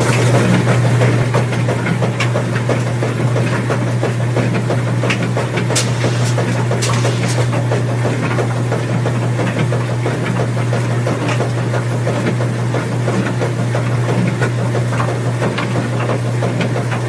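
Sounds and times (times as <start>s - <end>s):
washing machine motor hum: 0.0s - 17.0s
drum clicks and knocks: 5.7s - 7.9s.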